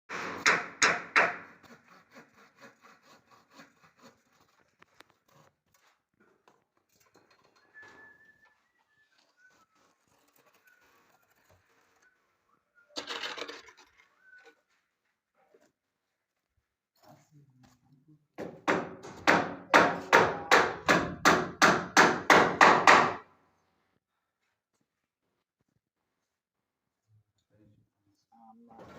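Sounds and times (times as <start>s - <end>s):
handsaw cutting timber: 0.2s - 5.5s
hammer blows on timber: 18.4s - 23.2s.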